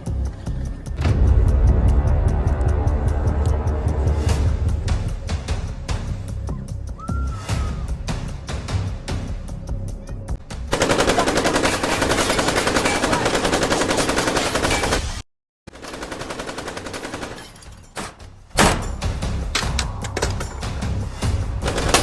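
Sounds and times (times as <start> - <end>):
low music: 0.0 - 12.3
machine-gun automatic bursts: 10.7 - 17.6.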